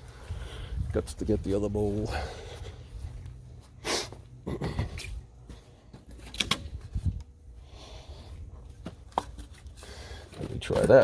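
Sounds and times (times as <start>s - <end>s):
handling knocks and clicks: 10.3s - 11.0s.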